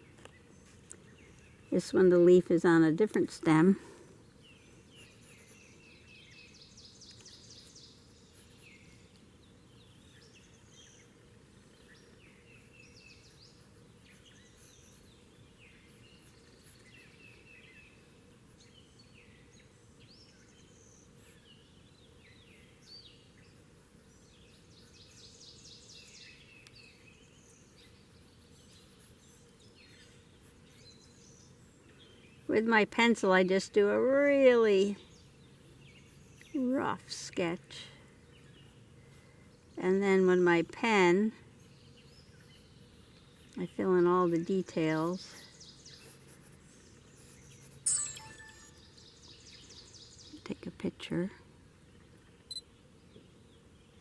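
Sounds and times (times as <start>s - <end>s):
low background hiss: 0.0s - 54.0s
songbirds chirping and trilling: 0.0s - 54.0s.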